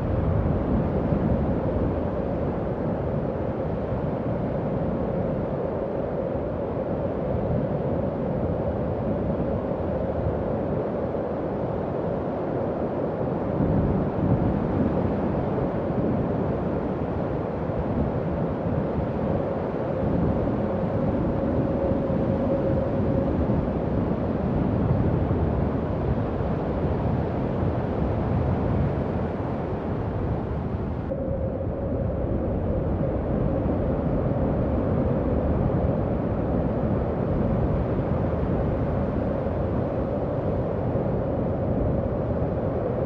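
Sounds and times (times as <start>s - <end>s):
howling wind: 0.0s - 43.0s
moaning wind whistle: 30.5s - 37.4s.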